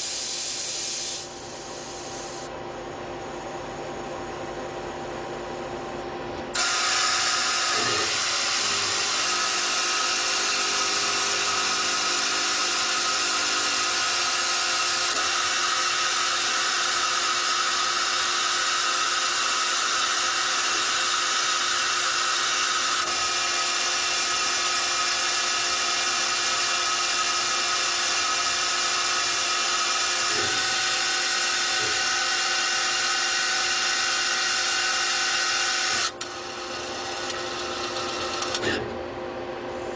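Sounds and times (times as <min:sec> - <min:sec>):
lathe hiss: 0:00.0 - 0:02.5
lathe whining tones: 0:06.6 - 0:17.4.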